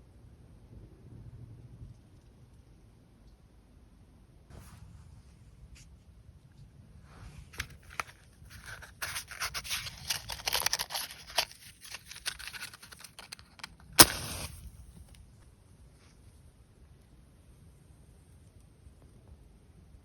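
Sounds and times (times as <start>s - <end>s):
scraping handling noise: 7.6s - 15.1s.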